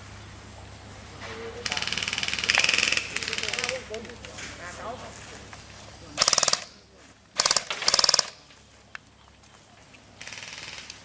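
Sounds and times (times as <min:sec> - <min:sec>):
airsoft guns firing bursts: 0:01.6 - 0:03.9, 0:06.2 - 0:06.8, 0:07.4 - 0:08.4, 0:10.2 - 0:11.0.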